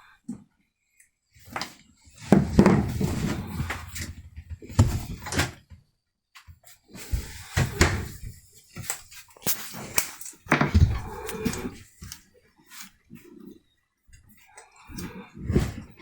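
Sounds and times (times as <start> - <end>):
objects knocking and rattling: 2.2 - 5.7.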